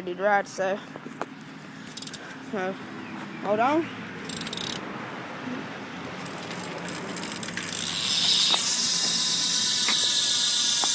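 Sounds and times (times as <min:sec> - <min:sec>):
bicycle hub clicking: 0:01.9 - 0:02.2, 0:04.2 - 0:04.8, 0:06.2 - 0:10.9.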